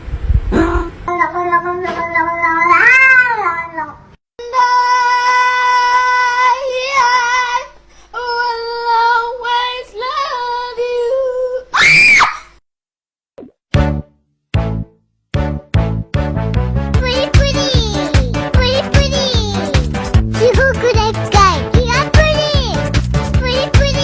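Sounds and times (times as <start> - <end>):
cat yowling: 2.5 - 3.9.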